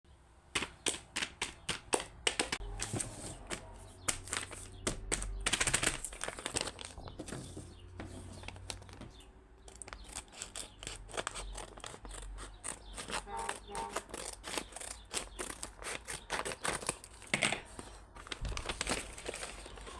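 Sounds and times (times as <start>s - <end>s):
plastic packet tearing: 4.0s - 7.1s, 8.4s - 9.1s, 9.7s - 19.9s
plastic packet crinkling: 4.0s - 7.2s, 8.3s - 12.3s, 15.4s - 19.9s.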